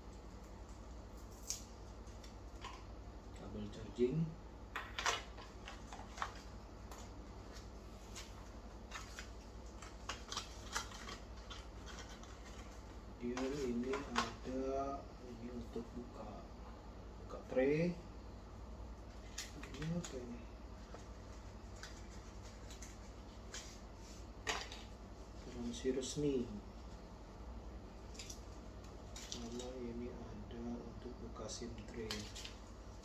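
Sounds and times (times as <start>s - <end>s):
plastic packaging rustling: 5.0s - 14.6s, 19.1s - 27.2s, 28.0s - 30.0s, 31.7s - 33.0s
paper packaging ticks: 8.2s - 12.7s.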